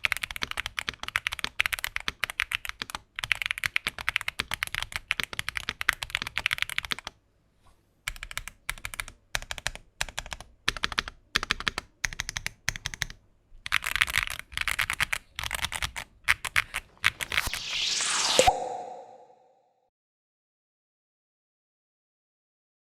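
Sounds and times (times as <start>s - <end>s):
mechanical keyboard typing: 0.0s - 7.2s, 8.1s - 17.2s
rising whoosh effect: 17.0s - 19.5s.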